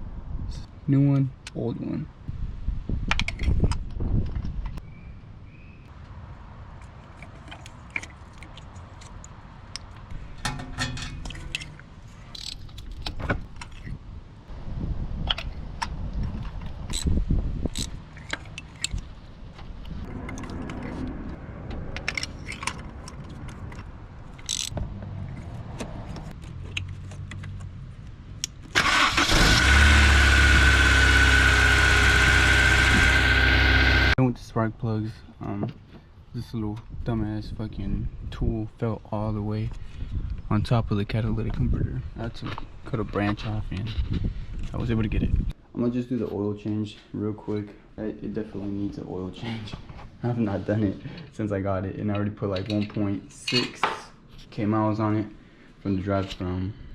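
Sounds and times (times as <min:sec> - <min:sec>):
car engine starting and idling: 0:28.7 - 0:34.2.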